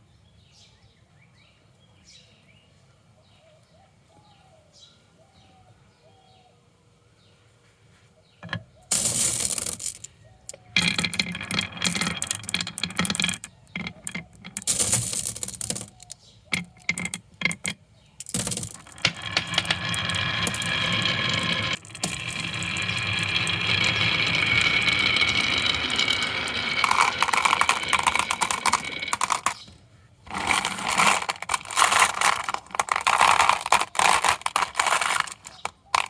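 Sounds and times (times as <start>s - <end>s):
marbles rattling down wooden run: 8.4s - 29.7s, 30.3s - 36.0s.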